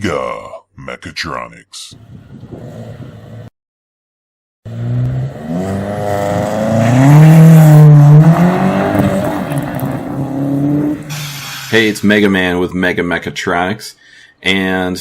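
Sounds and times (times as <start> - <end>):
car engine revving: 4.7 - 11.7.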